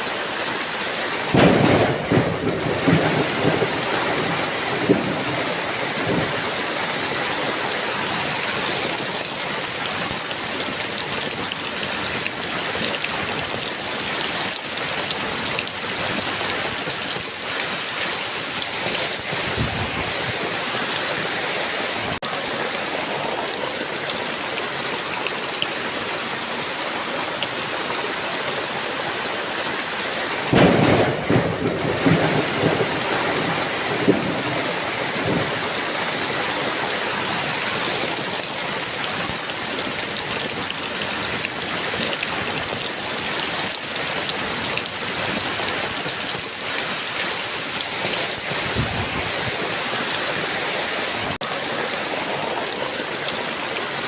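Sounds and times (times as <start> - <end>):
heavy rain: 0.0 - 54.0
thunder rumbling: 1.3 - 7.0, 30.5 - 35.8.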